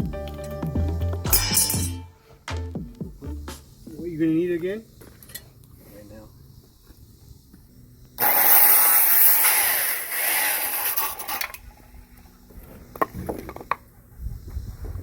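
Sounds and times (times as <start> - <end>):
power saw cutting wood: 8.2 - 11.6.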